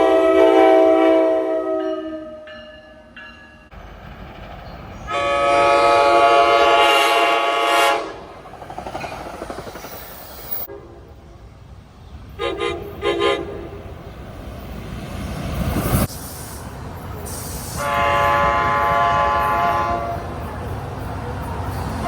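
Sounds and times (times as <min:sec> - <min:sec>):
train horn chord: 0:00.0 - 0:02.5, 0:05.1 - 0:08.2, 0:12.4 - 0:13.6, 0:17.8 - 0:20.3
train rumble: 0:00.0 - 0:22.0.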